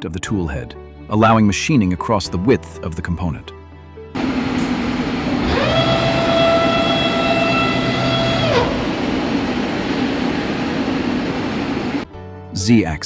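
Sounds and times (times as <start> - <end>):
machine drive whine: 4.2 - 12.0
machine noise and hum: 4.2 - 12.0.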